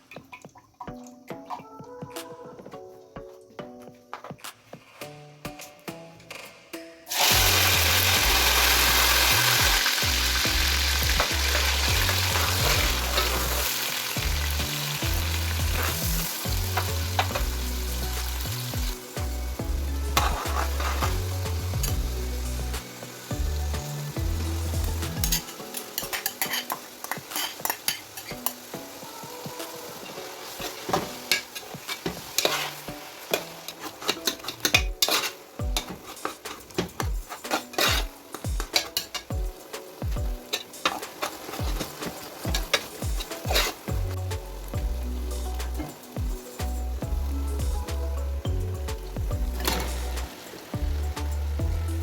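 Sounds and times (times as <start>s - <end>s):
food sizzling in hot oil: 7.1s - 52.0s
spoon scraping against a pot: 20.1s - 21.9s, 25.2s - 28.7s, 30.1s - 39.3s, 40.4s - 43.9s.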